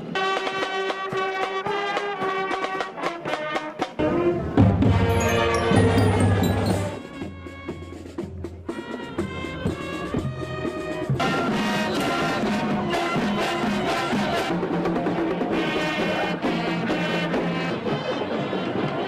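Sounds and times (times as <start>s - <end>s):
marching band with brass: 0.0s - 19.0s
light struck percussion: 4.6s - 9.0s.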